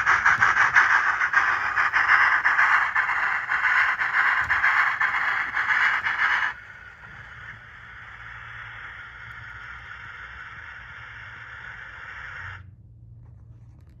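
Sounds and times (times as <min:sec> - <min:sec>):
steam hiss: 0:00.0 - 0:12.6
constant low hum: 0:00.0 - 0:14.0.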